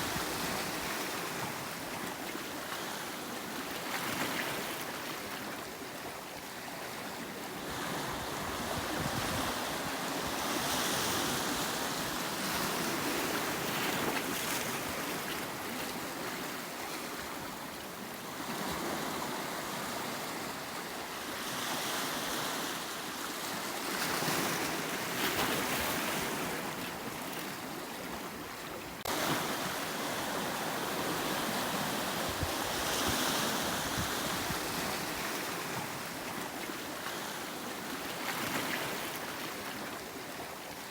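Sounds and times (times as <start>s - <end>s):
sea surf washing onto shore: 29.0s - 36.3s.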